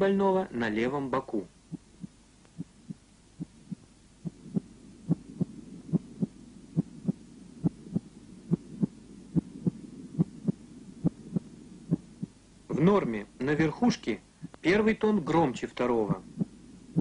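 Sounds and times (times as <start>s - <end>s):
heartbeat lub-dub: 1.7s - 12.4s, 16.0s - 17.0s.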